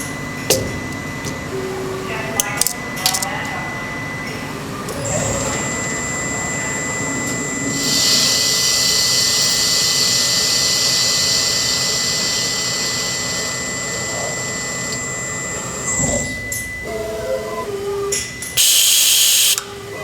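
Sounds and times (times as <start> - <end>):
high machine whine: 0.0 - 20.0
lathe hissing: 5.4 - 17.0, 18.6 - 19.6.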